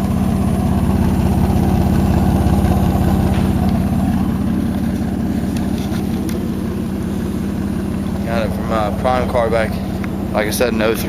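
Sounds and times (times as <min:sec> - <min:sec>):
truck engine idling: 0:00.0 - 0:11.0.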